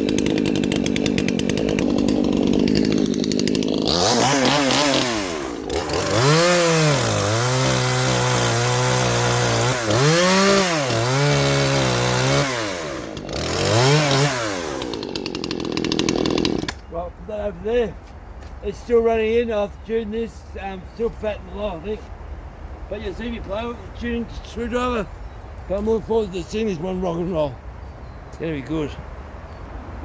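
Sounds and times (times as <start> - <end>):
chainsaw idling and revving: 0.0 - 16.9.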